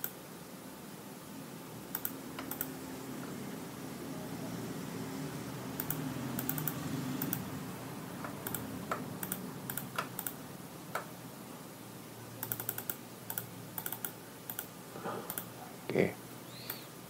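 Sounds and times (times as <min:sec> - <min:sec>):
keyboard and mouse clicking: 0:01.9 - 0:02.8, 0:05.8 - 0:07.4, 0:08.2 - 0:11.1, 0:12.4 - 0:14.7, 0:15.3 - 0:15.5.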